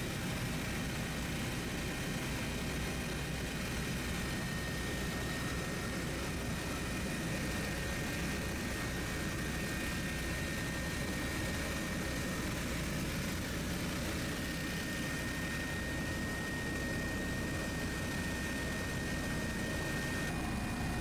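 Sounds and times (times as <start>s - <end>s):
helicopter rotor and engine noise: 0.0s - 21.0s.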